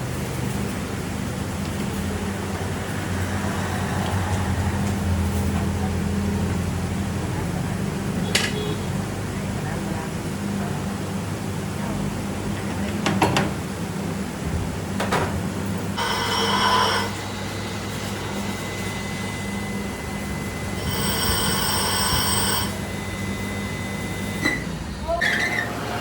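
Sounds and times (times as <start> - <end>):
workshop machine humming: 0.0 - 26.0
ringing squealing metal: 24.5 - 25.8.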